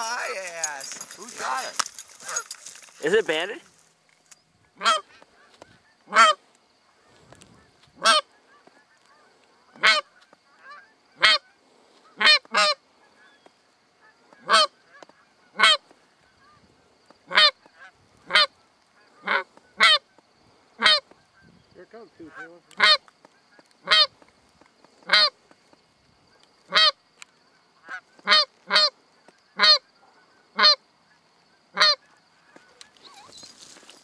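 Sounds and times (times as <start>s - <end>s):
goose honking: 4.8s - 7.2s, 8.0s - 13.4s, 14.0s - 16.6s, 17.3s - 20.0s, 20.8s - 21.4s, 22.2s - 24.2s, 25.0s - 25.4s, 26.7s - 27.0s, 27.8s - 33.7s.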